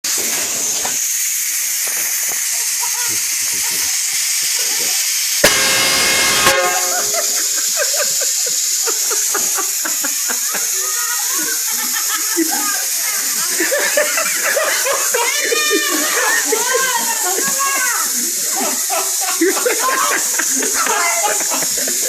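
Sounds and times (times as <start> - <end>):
steady hiss: 0.1 - 22.0
train horn blast: 5.4 - 7.6.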